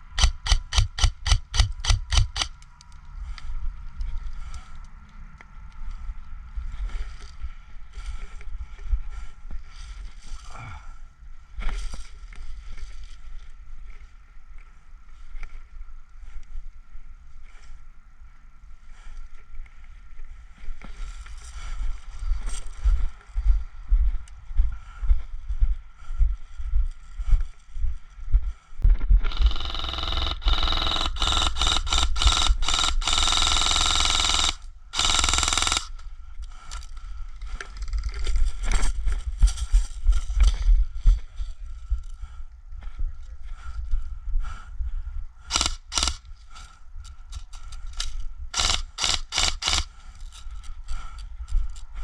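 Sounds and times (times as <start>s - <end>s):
loud rapid mechanical buzz: 0.0s - 2.5s, 29.2s - 36.0s, 45.5s - 46.7s, 47.3s - 50.4s
faint steady whine: 26.8s - 37.7s.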